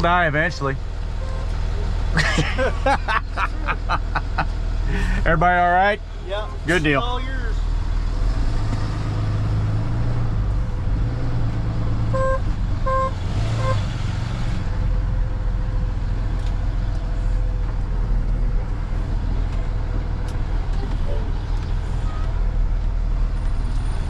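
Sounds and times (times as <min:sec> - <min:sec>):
truck engine idling: 0:00.0 - 0:13.7, 0:14.6 - 0:23.5
car horn beeps: 0:01.2 - 0:01.5, 0:12.1 - 0:13.8.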